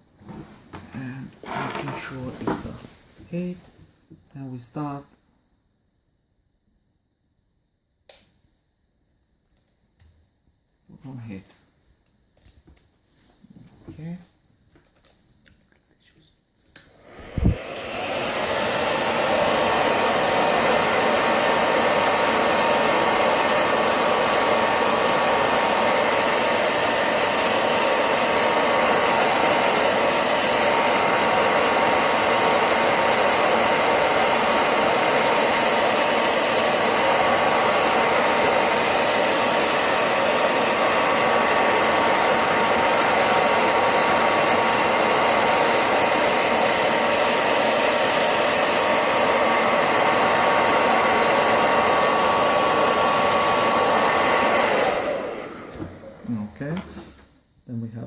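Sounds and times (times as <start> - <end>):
hair dryer running: 1.0 - 3.5, 16.8 - 57.2.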